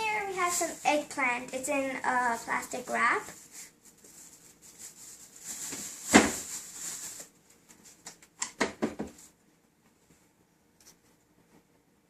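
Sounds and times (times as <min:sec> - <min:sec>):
plastic wrap rustling: 0:00.0 - 0:08.1.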